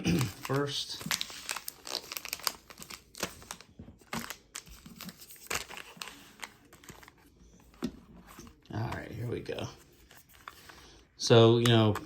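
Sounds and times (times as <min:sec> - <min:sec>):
plastic wrapping crinkling and tearing: 0:00.0 - 0:07.3.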